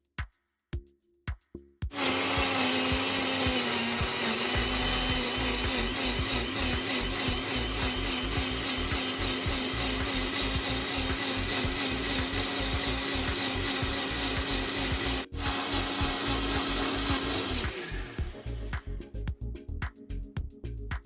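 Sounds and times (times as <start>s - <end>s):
blender motor running: 1.9s - 18.4s.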